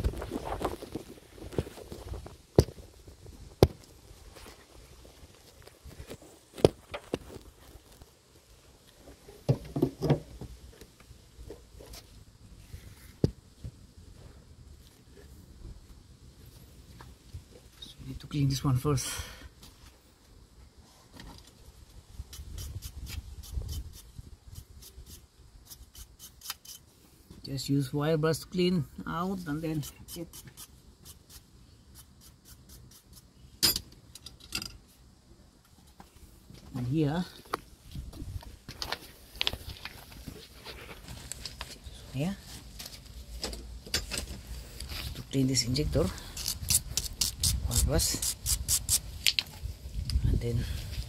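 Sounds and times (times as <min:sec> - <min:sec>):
metal tools knocking and clicking: 0:33.6 - 0:34.8
light clatter of tools: 0:33.6 - 0:34.9, 0:42.8 - 0:44.4.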